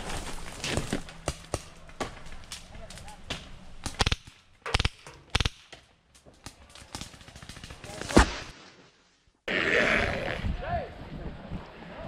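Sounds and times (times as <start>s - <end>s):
distant paintball shots: 3.2s - 8.5s
paintball markers firing: 3.8s - 8.3s.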